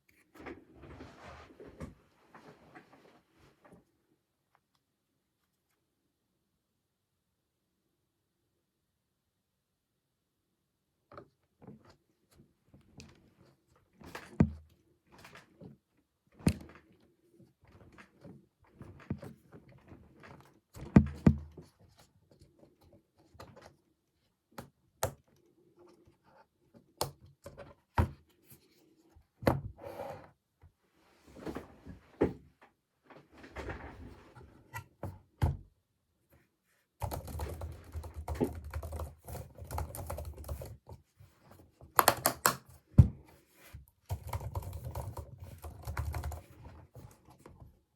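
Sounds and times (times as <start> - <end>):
clicks and thunks of handling: 14.0 - 16.9
fast typing on keyboard: 37.0 - 40.8, 42.0 - 42.6, 44.1 - 46.6.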